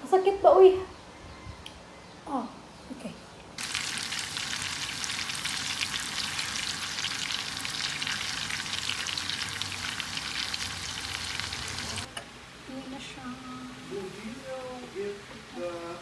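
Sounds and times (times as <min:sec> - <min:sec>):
food sizzling in a pan: 0:03.6 - 0:16.0.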